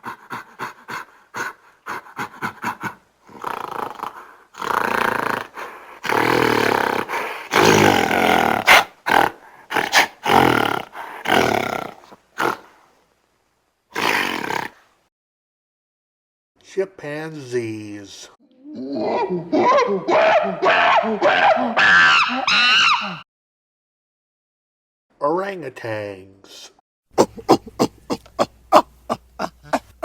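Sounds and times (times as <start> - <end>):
gorilla roars and growls: 0.0 - 12.7, 13.9 - 14.8, 18.6 - 23.2, 27.2 - 30.0
gorilla short sharp calls: 19.0 - 23.2.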